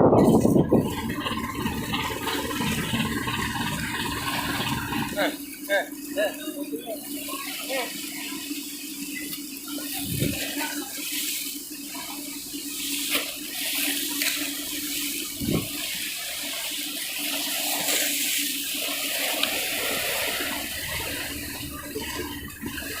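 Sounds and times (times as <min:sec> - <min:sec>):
engine hum: 0:00.0 - 0:05.6, 0:19.2 - 0:23.0
water rushing and churning: 0:00.0 - 0:23.0.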